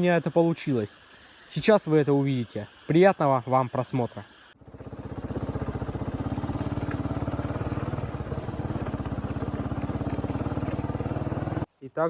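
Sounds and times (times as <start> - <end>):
small engine running: 4.5 - 11.7.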